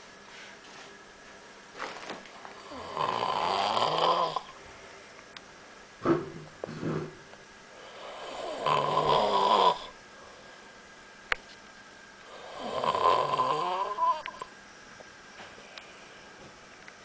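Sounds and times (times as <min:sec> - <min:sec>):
person snoring: 0:02.6 - 0:04.6, 0:07.8 - 0:10.0, 0:12.3 - 0:14.4.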